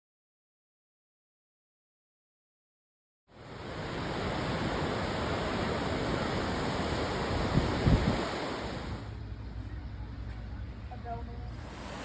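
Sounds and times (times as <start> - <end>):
rushing water roar: 3.3 - 9.2, 11.6 - 12.0.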